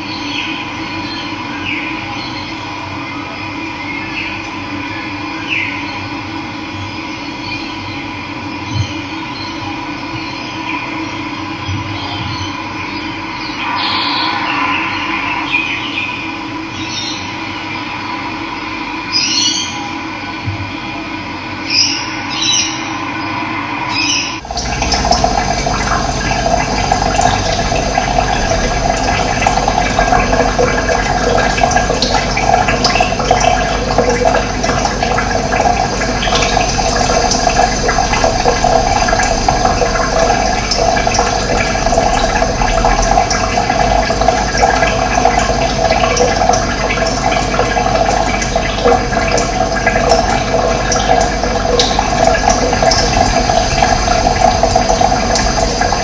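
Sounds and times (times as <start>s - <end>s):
water rushing: 13.4s - 17.2s, 23.7s - 56.0s.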